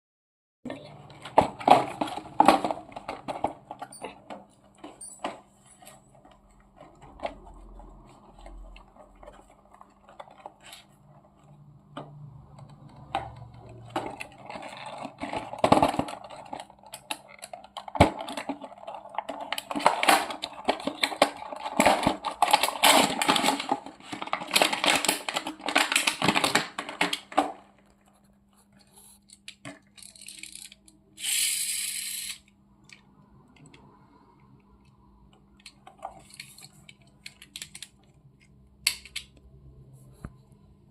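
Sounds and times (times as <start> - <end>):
packaging rustling and crinkling: 13.6 - 28.0.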